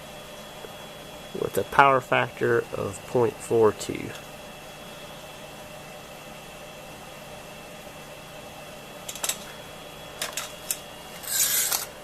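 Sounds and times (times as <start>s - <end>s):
scraping rattle: 11.2s - 12.0s.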